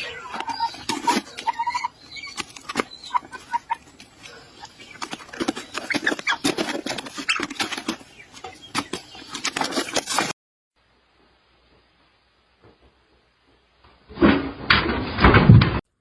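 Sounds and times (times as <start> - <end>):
animal squeaky calls: 0.0 - 3.8.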